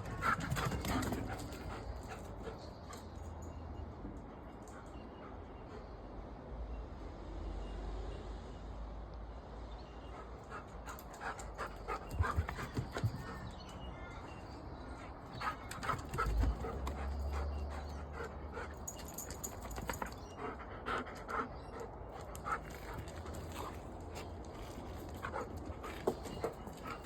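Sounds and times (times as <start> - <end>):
dog panting: 0.0 - 2.8, 10.1 - 13.6, 15.0 - 27.0.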